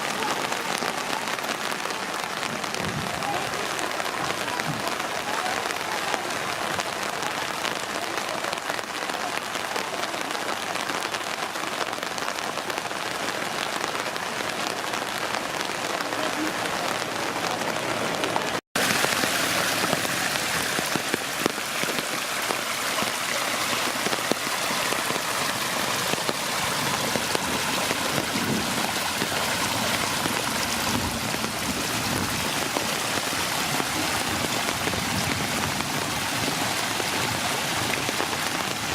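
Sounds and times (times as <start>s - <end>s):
rain spattering on hard surfaces: 0.0s - 38.9s.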